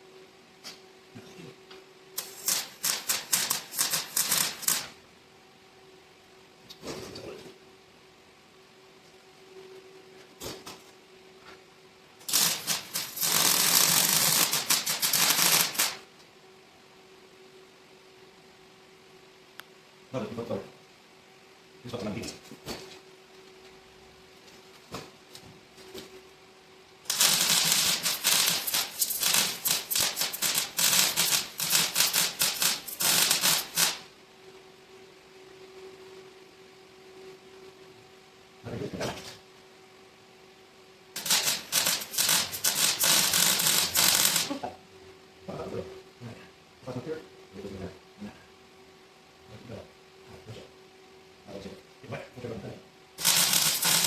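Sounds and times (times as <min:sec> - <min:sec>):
welding arc crackling on steel: 0:02.2 - 0:05.0, 0:12.2 - 0:16.0, 0:27.0 - 0:34.1, 0:41.2 - 0:44.6, 0:53.2 - 0:54.0.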